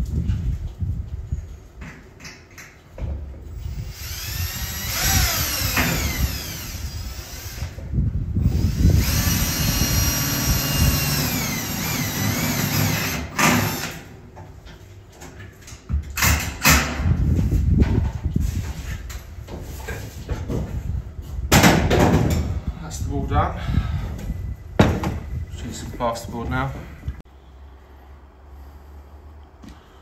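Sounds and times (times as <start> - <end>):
power drill driving screws: 3.5 - 7.8, 8.4 - 14.0.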